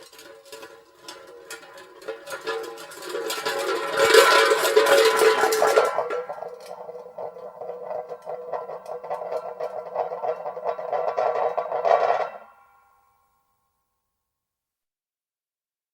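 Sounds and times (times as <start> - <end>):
metal hubcap spinning on concrete: 0.0 - 12.6.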